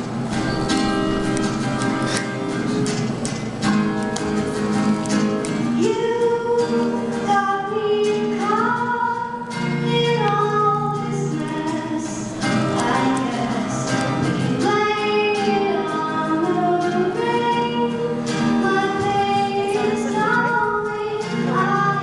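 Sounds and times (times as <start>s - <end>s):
strummed acoustic guitar: 0.0s - 22.0s
women singing: 5.8s - 22.0s.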